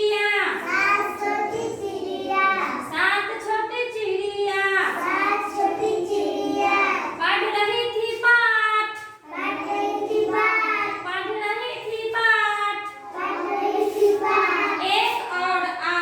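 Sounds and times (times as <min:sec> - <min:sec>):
child singing unaccompanied: 0:09.3 - 0:11.1.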